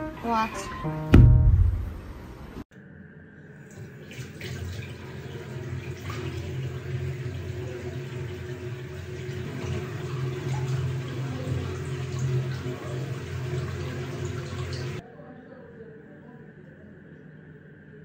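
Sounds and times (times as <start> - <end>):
tap water running into sink: 3.7 - 15.0.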